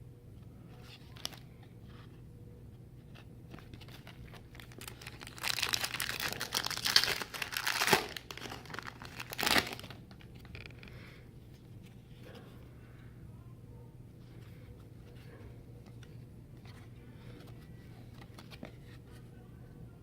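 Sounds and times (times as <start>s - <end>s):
wrapper crinkling: 3.6s - 10.8s
wrapper tearing: 3.8s - 10.8s.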